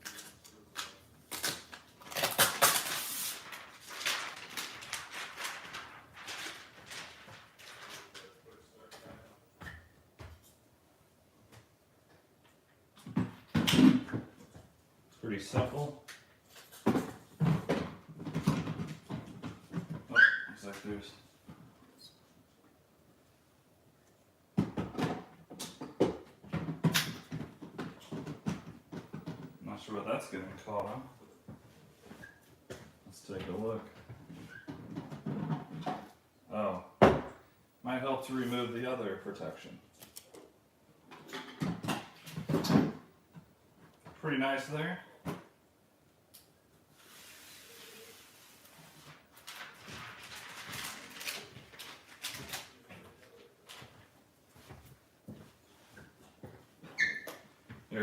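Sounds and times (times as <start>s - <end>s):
packaging rustling and crinkling: 0.0s - 8.5s, 48.2s - 53.8s.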